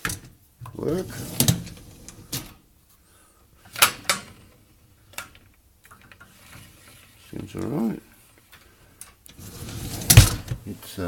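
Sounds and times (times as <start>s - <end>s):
dishwasher racks clattering: 0.0s - 2.6s, 3.7s - 5.4s, 9.4s - 10.6s.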